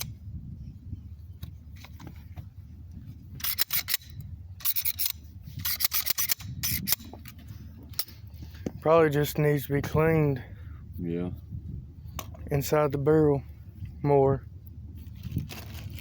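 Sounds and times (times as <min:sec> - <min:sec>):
low steady rumble: 0:00.0 - 0:16.0
pistol clicking and scraping: 0:03.3 - 0:08.3.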